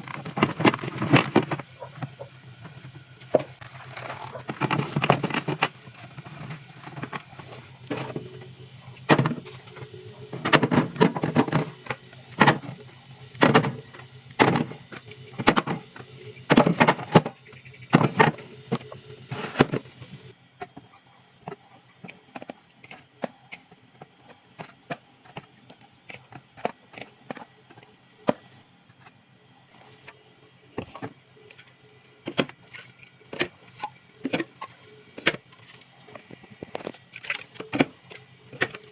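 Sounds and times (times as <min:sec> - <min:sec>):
items knocking and clattering: 0:00.0 - 0:12.8, 0:13.4 - 0:13.8, 0:14.4 - 0:19.9.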